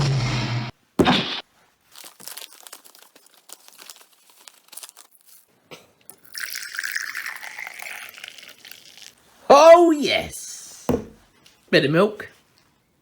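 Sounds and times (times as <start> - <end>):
coffee packet crinkling: 1.8 - 5.6, 6.2 - 9.2
liquid pouring into a cup: 6.1 - 9.2.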